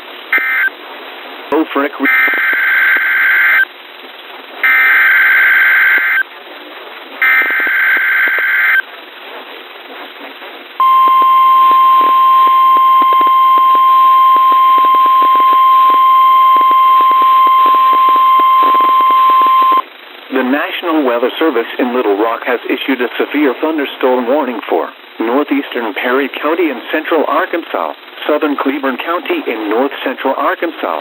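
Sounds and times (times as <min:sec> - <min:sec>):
faint static crackles: 0:00.0 - 0:31.0
steady alarm tone: 0:04.6 - 0:06.2, 0:07.2 - 0:08.8, 0:10.8 - 0:19.8
warbling data screech: 0:10.8 - 0:19.8.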